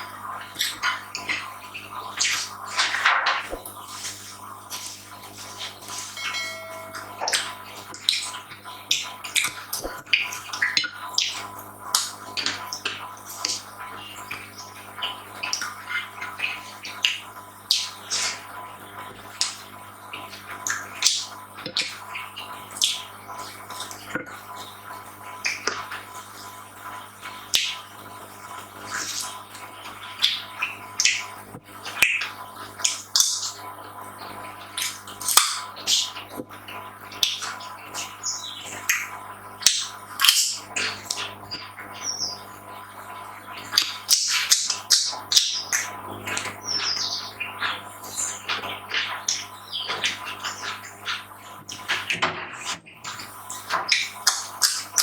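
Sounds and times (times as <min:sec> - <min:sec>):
faint steady hum: 0:00.0 - 0:55.0
chewing and mouth smacks: 0:47.6 - 0:55.0.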